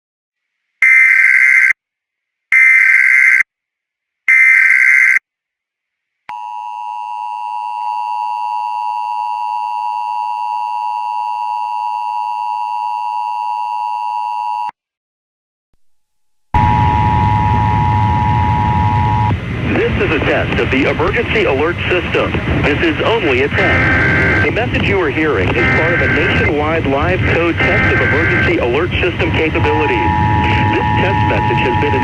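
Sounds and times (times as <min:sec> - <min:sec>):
two-tone attention signal: 0:25.5 - 0:26.5, 0:29.4 - 0:32.0.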